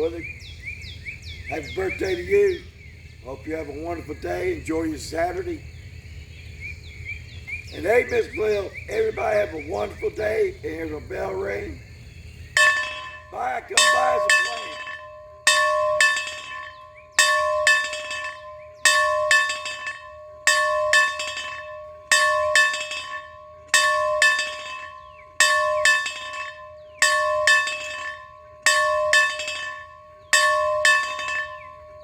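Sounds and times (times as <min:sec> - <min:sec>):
bell ringing: 0:12.6 - 0:32.0.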